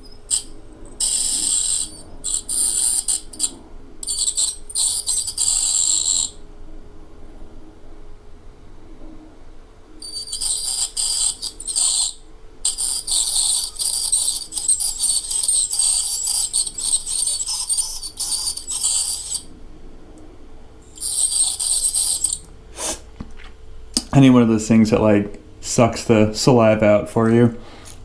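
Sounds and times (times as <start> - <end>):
dental drill whining: 0.0 - 6.4, 10.0 - 19.5, 20.8 - 23.0.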